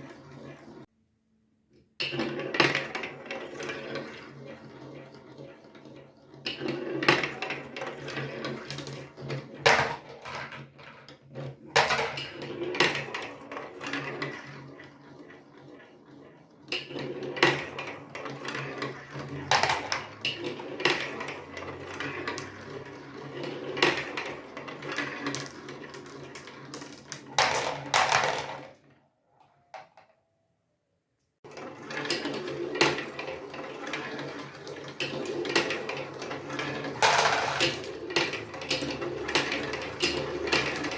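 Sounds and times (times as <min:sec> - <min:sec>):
marbles clattering down plastic track: 0:00.0 - 0:00.9, 0:02.0 - 0:29.0, 0:31.4 - 0:40.9.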